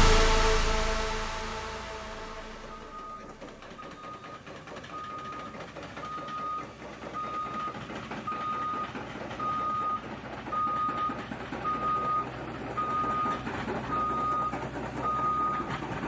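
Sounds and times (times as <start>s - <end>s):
steady machine noise: 0.0s - 3.6s.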